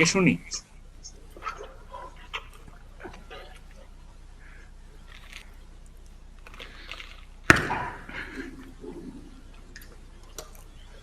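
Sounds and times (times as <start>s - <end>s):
elephant crunching and chewing: 1.1s - 11.0s
watermelon cracking: 4.9s - 8.8s.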